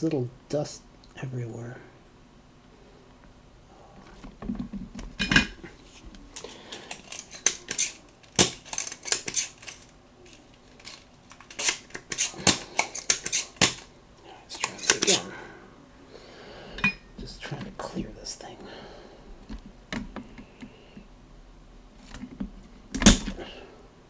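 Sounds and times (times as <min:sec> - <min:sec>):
desoldering pump snaps: 0:05.0 - 0:14.0, 0:14.6 - 0:15.3, 0:22.9 - 0:23.4.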